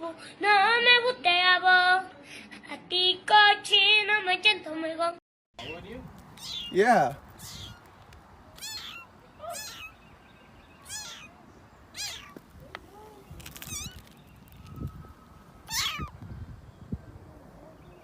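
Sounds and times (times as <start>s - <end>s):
cat meowing: 6.4s - 7.8s, 8.6s - 10.0s, 10.8s - 12.4s, 13.4s - 14.2s, 15.6s - 16.2s.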